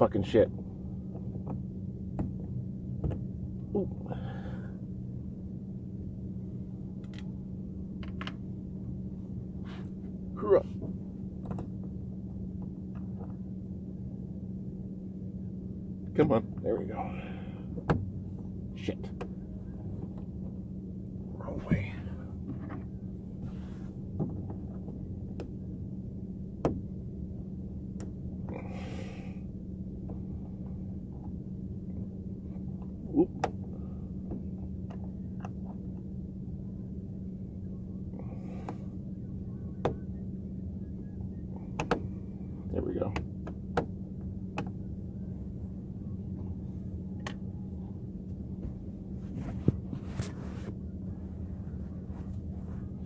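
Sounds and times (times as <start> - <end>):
steady low hum: 0.0 - 53.0
short rustle: 48.7 - 53.0.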